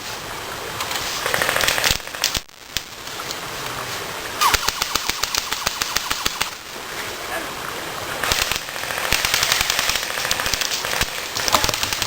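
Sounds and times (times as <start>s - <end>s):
airsoft guns firing: 8.2s - 12.0s.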